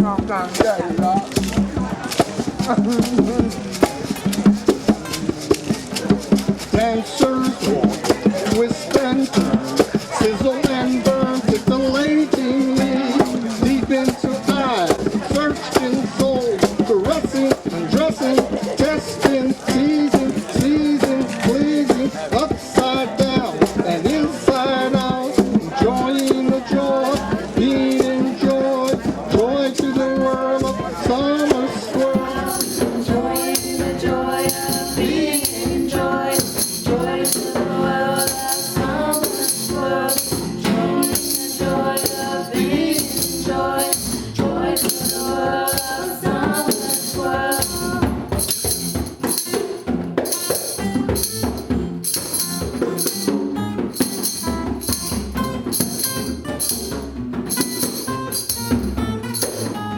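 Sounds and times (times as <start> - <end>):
shaken hand percussion: 0.0 - 59.9
upbeat live band music: 0.0 - 59.9.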